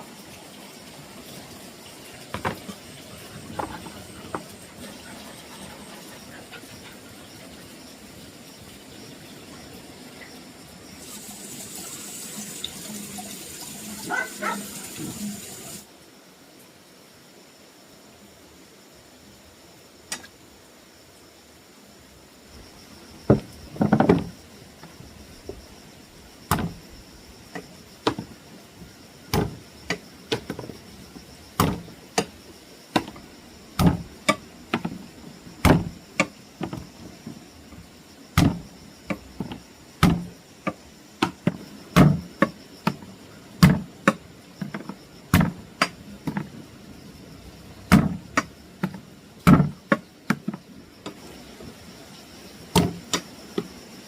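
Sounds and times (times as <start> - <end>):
sharp knocks: 26.5 - 26.8, 29.3 - 30.7, 31.6 - 32.4, 33.0 - 33.2, 33.8 - 34.9, 35.6 - 36.8, 38.4 - 38.7, 40.0 - 43.0.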